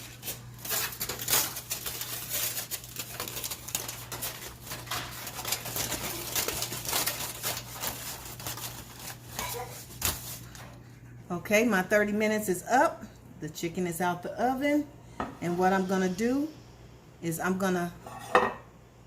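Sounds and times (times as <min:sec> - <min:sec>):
aluminum foil crinkling: 0:00.0 - 0:10.8.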